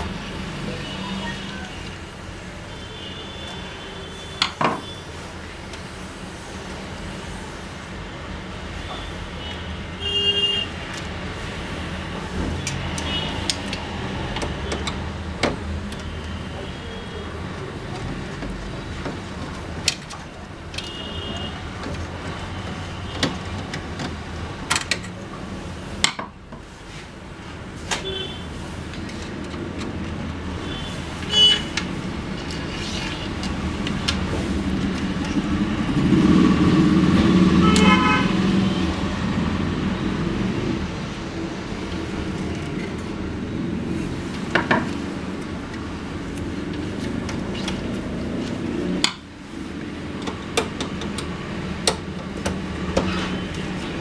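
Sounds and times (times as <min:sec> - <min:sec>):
road traffic: 0:00.0 - 0:54.0
vehicle passing: 0:31.9 - 0:45.4
car horn toots: 0:37.6 - 0:38.4.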